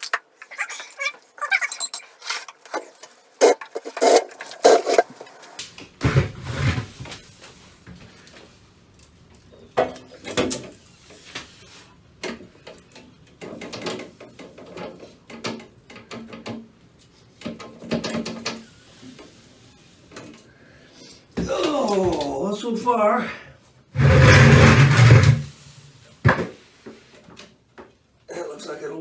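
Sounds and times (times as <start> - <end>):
toilet knocking and scraping: 3.4 - 7.2, 24.0 - 25.6, 26.2 - 26.6.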